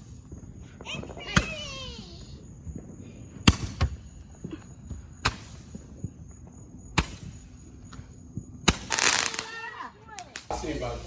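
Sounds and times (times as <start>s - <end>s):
fireworks cracking: 0.0s - 11.0s.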